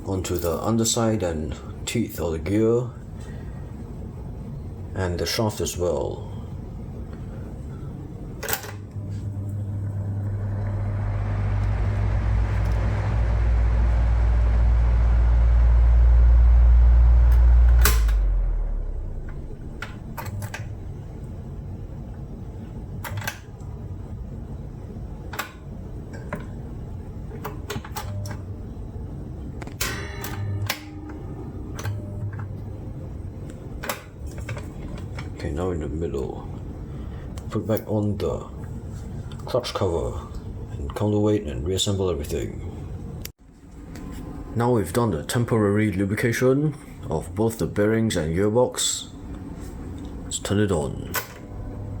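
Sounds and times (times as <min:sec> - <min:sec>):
electric motor humming: 0:09.0 - 0:20.8, 0:51.4 - 0:52.0.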